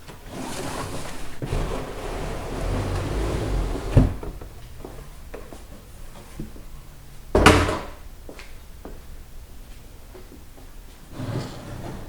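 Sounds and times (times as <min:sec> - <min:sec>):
quiet handling: 0:00.0 - 0:11.0
tool case scraping: 0:00.2 - 0:04.8.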